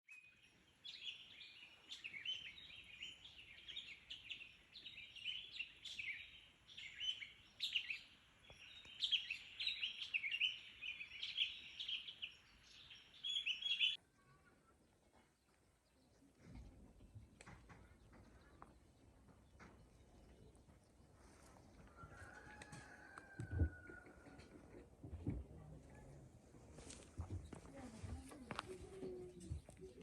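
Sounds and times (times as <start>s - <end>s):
songbirds chirping and singing: 0.1s - 14.0s, 27.2s - 30.0s.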